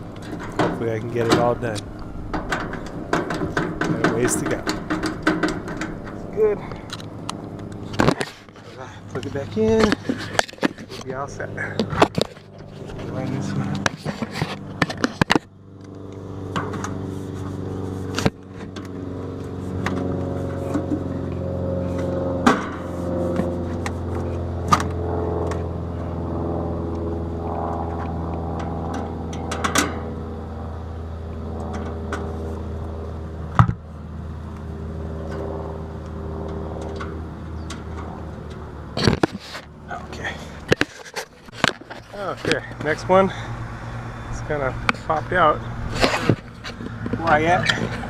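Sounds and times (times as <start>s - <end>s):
air conditioner unit humming: 0.0s - 14.7s.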